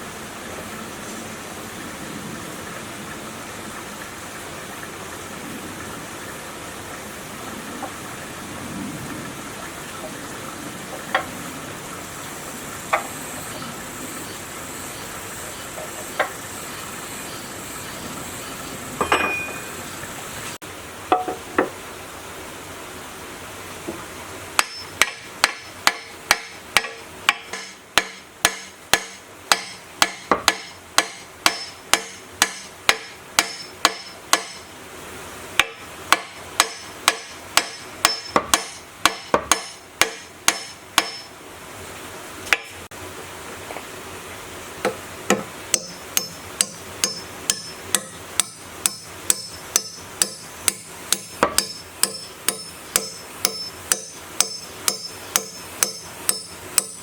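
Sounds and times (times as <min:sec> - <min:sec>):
ringing hammer blows: 0:35.6 - 0:41.3, 0:45.7 - 0:57.0.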